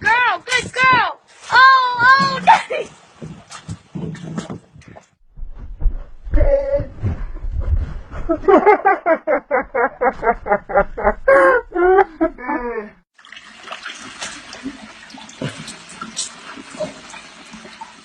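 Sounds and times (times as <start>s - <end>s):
running water: 13.1s - 18.0s.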